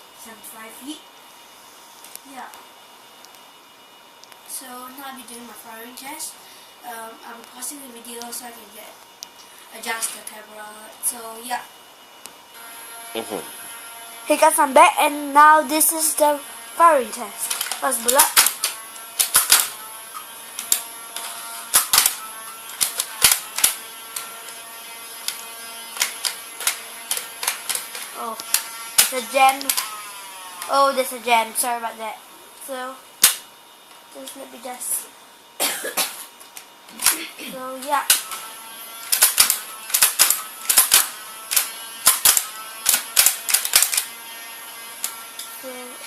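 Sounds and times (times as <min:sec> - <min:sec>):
sharp mechanical clicks: 0:17.4 - 0:24.6, 0:25.2 - 0:30.0, 0:33.2 - 0:33.4, 0:38.0 - 0:44.1.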